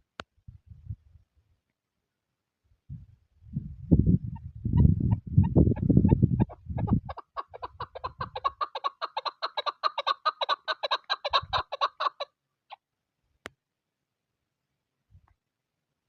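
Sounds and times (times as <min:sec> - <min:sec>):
wind rumble on microphone: 0:00.4 - 0:01.5, 0:02.8 - 0:08.6, 0:11.3 - 0:11.6
partridge clucking calls: 0:05.4 - 0:12.3.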